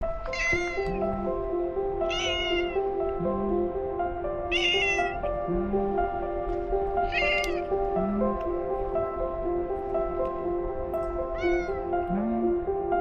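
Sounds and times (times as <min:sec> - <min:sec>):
background music: 0:00.0 - 0:13.0
cat meowing: 0:00.2 - 0:01.0, 0:02.1 - 0:02.9, 0:04.5 - 0:05.3, 0:07.0 - 0:07.7, 0:11.3 - 0:12.1.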